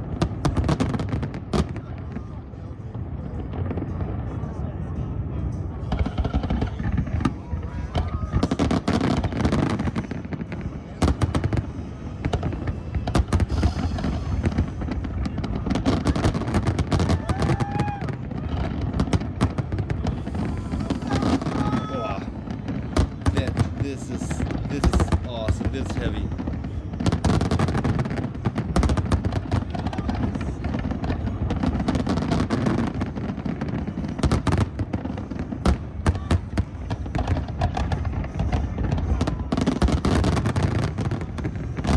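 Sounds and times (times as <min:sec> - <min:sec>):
sharp firework cracks: 0:13.2 - 0:17.8, 0:19.1 - 0:26.1
fireworks shell bursts and crackling: 0:13.5 - 0:15.1
low rumble: 0:13.5 - 0:15.8, 0:20.0 - 0:22.7.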